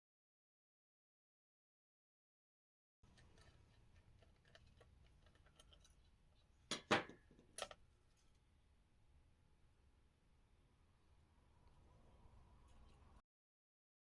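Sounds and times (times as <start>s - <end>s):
small laptop parts clicking: 3.1s - 6.5s, 7.4s - 7.8s.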